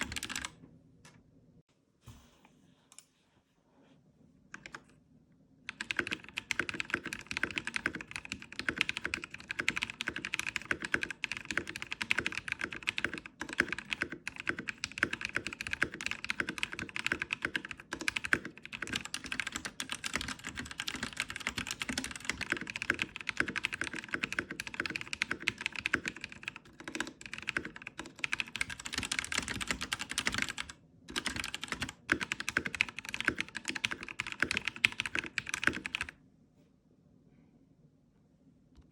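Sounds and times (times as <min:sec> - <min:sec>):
fast typing on mechanical keyboard: 0:00.0 - 0:00.5, 0:05.7 - 0:36.2.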